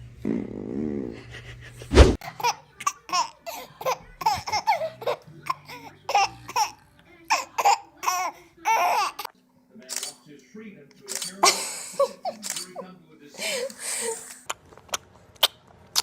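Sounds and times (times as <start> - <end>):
baby laughing: 2.2 - 9.3.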